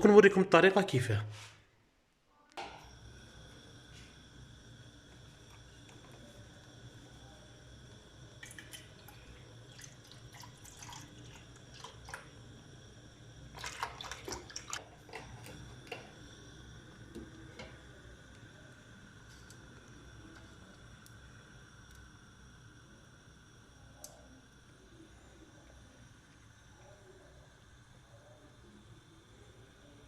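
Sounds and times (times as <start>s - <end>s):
milk pouring into a pan: 5.2s - 21.2s.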